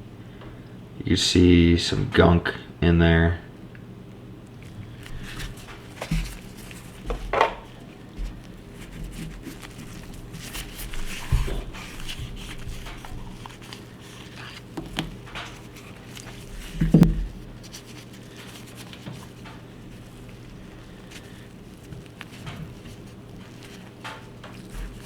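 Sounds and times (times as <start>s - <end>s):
tools knocking when set down: 7.1s - 7.7s.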